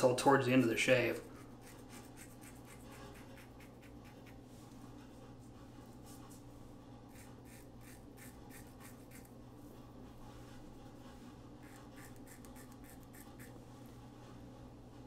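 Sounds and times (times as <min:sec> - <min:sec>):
low steady hum: 0:00.0 - 0:15.0
razor scraping stubble: 0:01.2 - 0:04.4, 0:07.1 - 0:09.3, 0:11.6 - 0:13.6.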